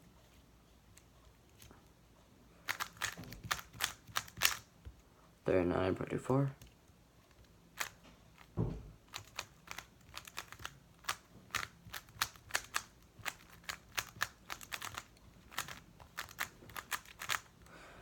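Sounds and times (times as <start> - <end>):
speed cube clicking: 2.6 - 4.7, 7.3 - 17.7
dull thump: 8.6 - 9.0.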